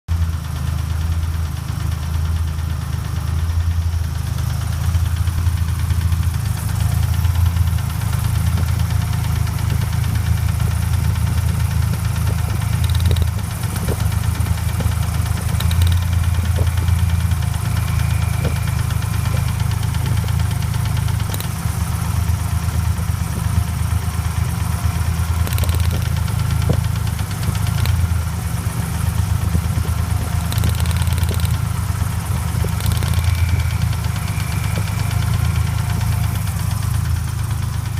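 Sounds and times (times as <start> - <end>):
engine idling: 0.0 - 37.9
rhythmic rod knock: 11.3 - 21.5.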